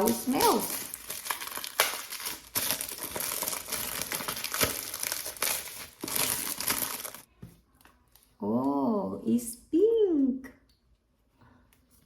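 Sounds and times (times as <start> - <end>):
packaging crinkling: 0.0 - 7.3.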